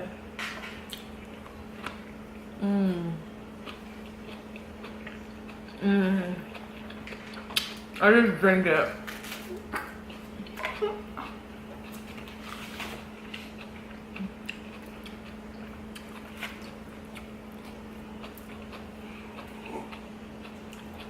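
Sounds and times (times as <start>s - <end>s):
steady low hum: 0.0s - 21.0s
person chewing quietly: 0.8s - 8.0s, 9.2s - 21.0s.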